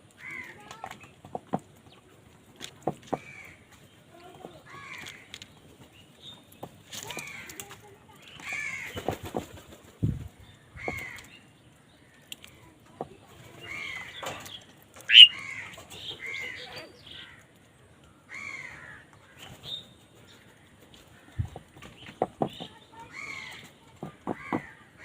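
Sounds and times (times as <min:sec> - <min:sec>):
crows cawing: 0:00.2 - 0:00.6, 0:03.1 - 0:03.6, 0:04.7 - 0:05.4, 0:08.4 - 0:09.0, 0:10.8 - 0:11.3, 0:15.1 - 0:17.5, 0:18.3 - 0:19.2, 0:24.2 - 0:25.0
low thumps and flutters: 0:09.2 - 0:10.4.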